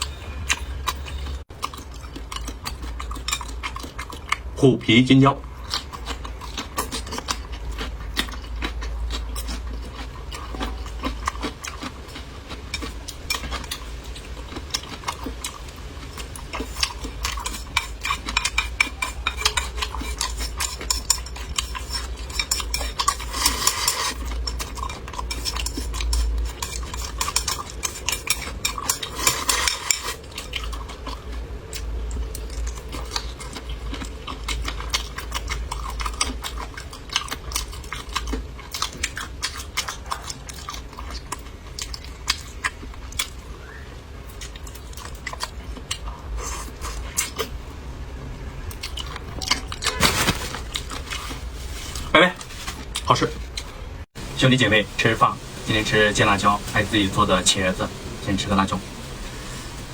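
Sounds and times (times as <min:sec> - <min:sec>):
low steady hum: 0:00.0 - 0:39.1, 0:40.9 - 0:59.9
utensils clicking against dishes: 0:16.9 - 0:30.2.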